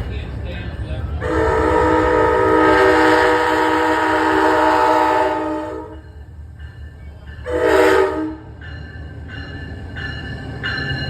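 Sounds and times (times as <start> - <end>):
low rumble of train: 0.0 - 11.0
train horn blasts: 1.2 - 6.1, 7.4 - 8.5.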